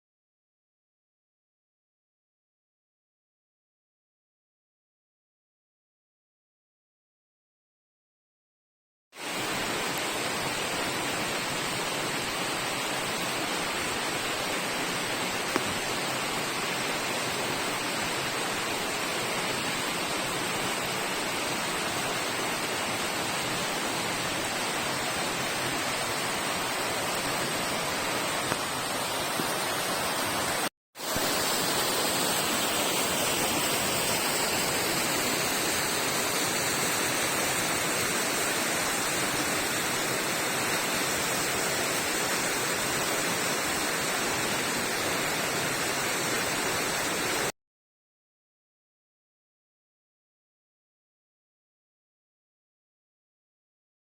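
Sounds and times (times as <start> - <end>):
small waterfall splashing: 9.2 - 47.6.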